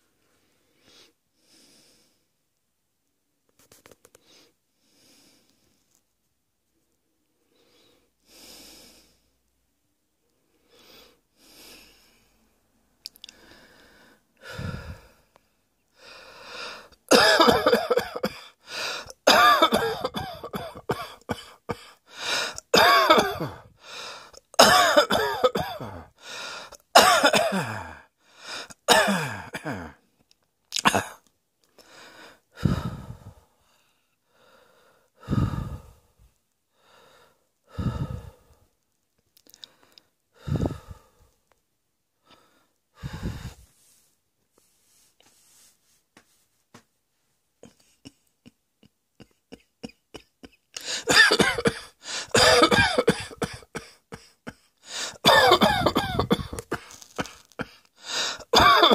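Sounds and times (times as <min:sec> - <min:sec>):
person coughing: 0:17.1 - 0:18.5, 0:19.1 - 0:22.0, 0:22.6 - 0:23.6, 0:24.6 - 0:26.1, 0:26.9 - 0:28.0, 0:28.9 - 0:30.0, 0:30.8 - 0:31.2, 0:49.2 - 0:58.9.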